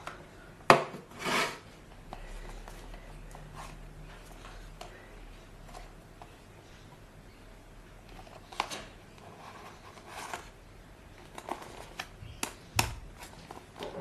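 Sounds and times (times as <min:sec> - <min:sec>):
hands handling packaging: 0:08.0 - 0:14.0.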